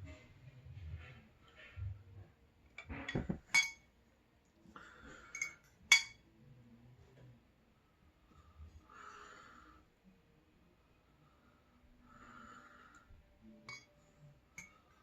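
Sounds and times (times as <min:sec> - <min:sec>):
utensil clinking against dish: 0:02.8 - 0:03.9, 0:05.3 - 0:06.2.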